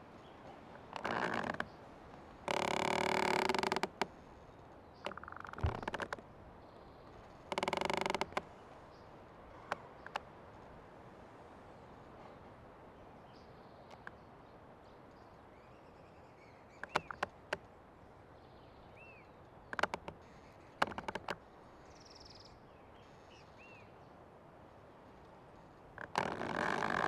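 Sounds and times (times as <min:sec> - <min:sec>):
tree creaking: 0:00.0 - 0:11.4, 0:16.7 - 0:17.7, 0:19.7 - 0:21.5, 0:25.3 - 0:27.0.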